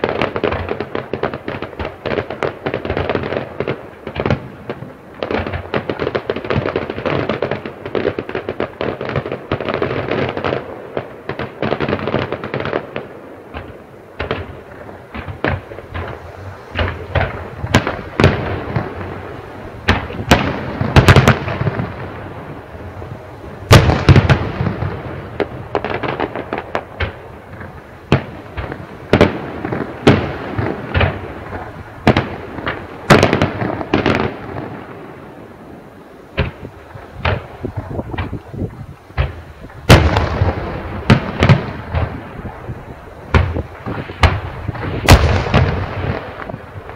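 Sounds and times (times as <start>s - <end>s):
fireworks crackling: 0.0s - 46.9s.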